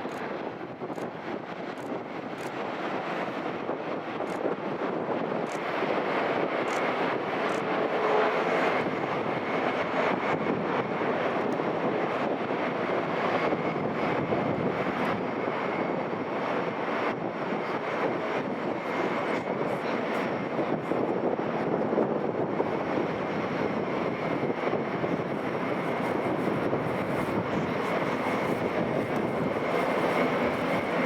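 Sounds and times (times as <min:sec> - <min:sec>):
jet engines running: 0:00.0 - 0:31.0.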